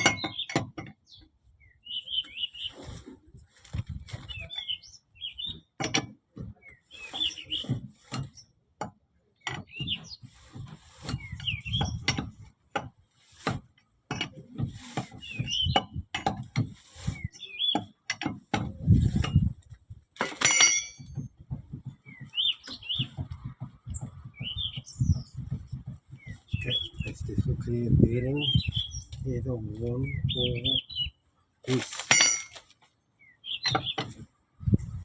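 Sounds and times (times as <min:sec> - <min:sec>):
wheel hub knocking and clunking: 0:00.0 - 0:01.3, 0:05.4 - 0:28.3, 0:32.0 - 0:32.9, 0:33.5 - 0:35.0
small birds chirping: 0:00.0 - 0:12.6, 0:14.8 - 0:19.6, 0:21.0 - 0:31.8, 0:32.9 - 0:35.0.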